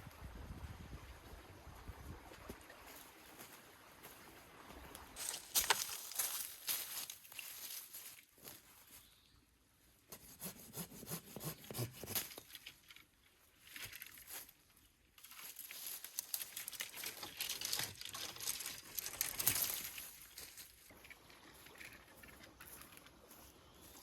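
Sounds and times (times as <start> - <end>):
dry twigs crackling and rustling: 5.2 - 9.1, 12.2 - 24.0.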